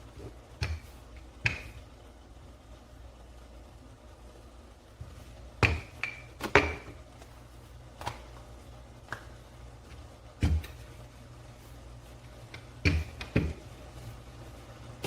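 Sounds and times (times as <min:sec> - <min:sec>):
rolling pin knocking on board: 0:00.6 - 0:01.8, 0:05.6 - 0:07.0, 0:12.8 - 0:13.6.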